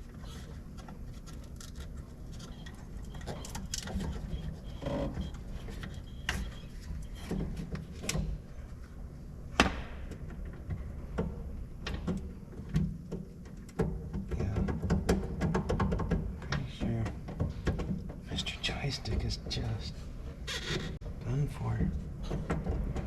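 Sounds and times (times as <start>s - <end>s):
steady low hum: 0.0s - 23.0s
hand tools and metal parts knocking: 10.1s - 18.4s.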